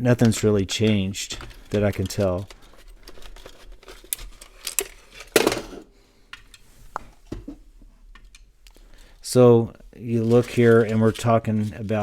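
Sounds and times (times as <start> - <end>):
plastic clock cases clattering: 0.1 - 5.9.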